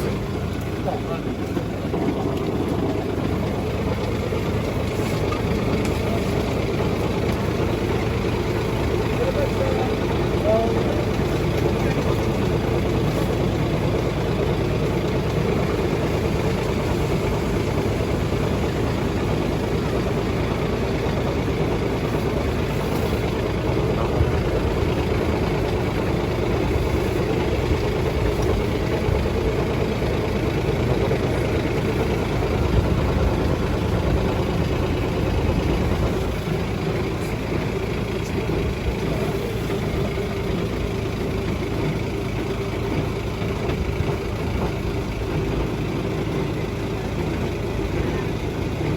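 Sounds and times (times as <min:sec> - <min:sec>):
jetting truck engine running: 0:00.0 - 0:48.9.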